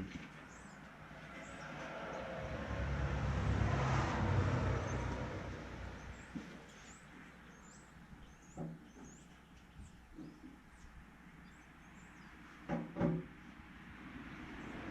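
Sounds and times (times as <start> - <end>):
motor vehicle passing: 0.4 - 7.1, 13.8 - 14.9.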